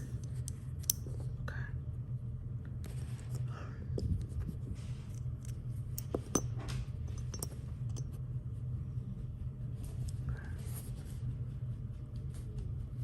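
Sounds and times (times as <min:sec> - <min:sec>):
magnets clicking together: 0:00.0 - 0:01.1
steady low hum: 0:00.0 - 0:13.0.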